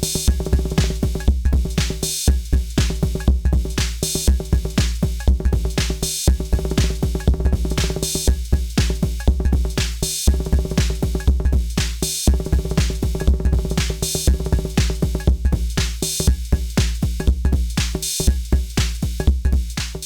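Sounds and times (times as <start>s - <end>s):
drum machine rhythmic pattern: 0.0s - 20.0s.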